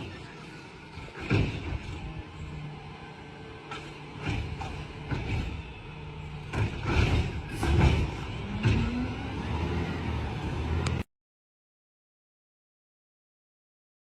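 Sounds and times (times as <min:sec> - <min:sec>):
garbage truck engine running: 0:00.0 - 0:11.0
loud knocks and clanks: 0:01.0 - 0:02.2, 0:03.7 - 0:05.8, 0:06.4 - 0:09.0.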